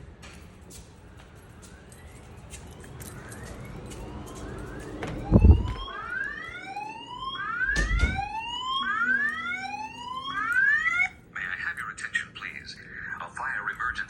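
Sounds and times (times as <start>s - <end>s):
fire alarm whoop tone: 1.4s - 11.2s.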